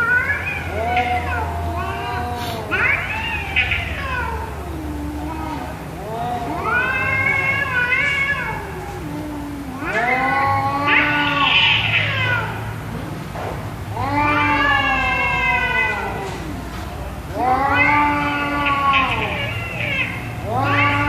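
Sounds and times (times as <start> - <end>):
cat yowling: 0.0 - 12.8, 13.9 - 21.0.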